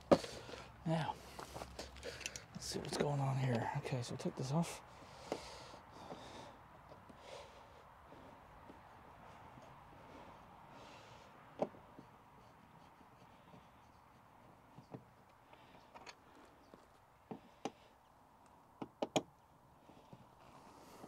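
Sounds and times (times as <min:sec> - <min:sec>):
car mirror base clicks and knocks: 0:18.8 - 0:19.3.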